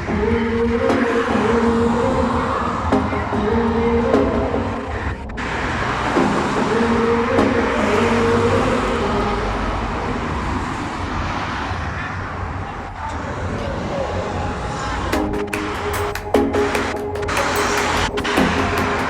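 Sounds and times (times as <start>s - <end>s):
road traffic: 4.5s - 19.0s.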